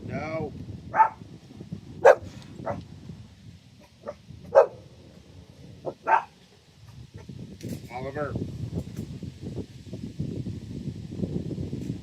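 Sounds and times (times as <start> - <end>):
dog barking: 0.9 - 1.2, 2.0 - 2.8, 4.0 - 4.8, 5.9 - 6.4.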